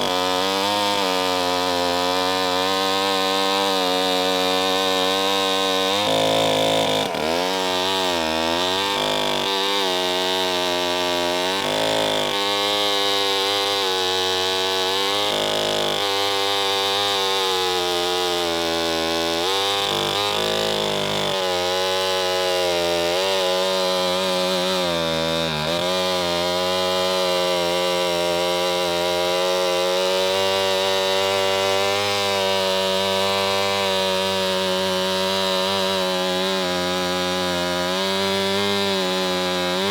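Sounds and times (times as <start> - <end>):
chainsaw engine running: 0.0 - 39.9.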